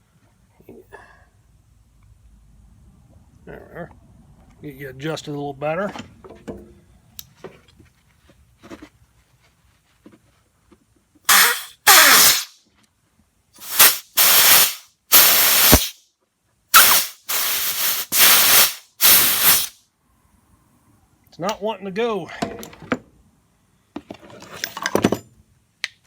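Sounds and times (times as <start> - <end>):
compressed air blasts hissing: 11.3 - 12.6, 13.6 - 16.0, 16.7 - 19.8.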